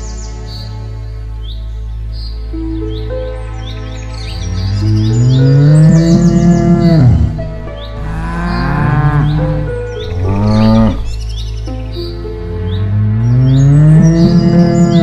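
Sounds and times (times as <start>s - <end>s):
small birds chirping: 1.4s - 15.0s
cattle mooing: 4.6s - 11.2s, 12.8s - 15.0s.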